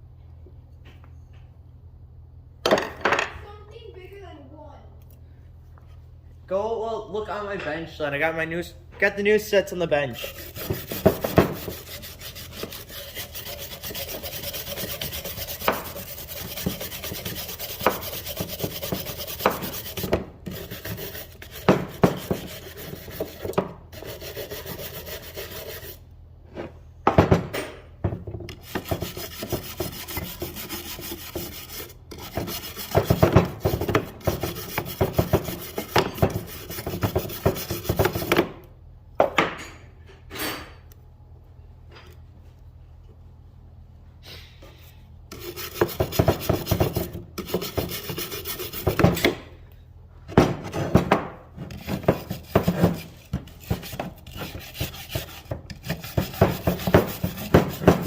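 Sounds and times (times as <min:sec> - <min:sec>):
hand tool scraping metal: 0:10.2 - 0:26.0, 0:28.5 - 0:38.3, 0:45.3 - 0:49.4, 0:51.6 - 0:58.0.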